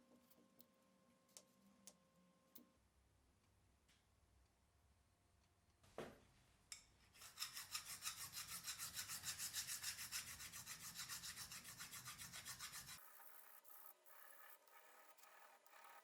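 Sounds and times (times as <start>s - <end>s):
hand rasping strokes on workpiece: 7.2s - 13.0s.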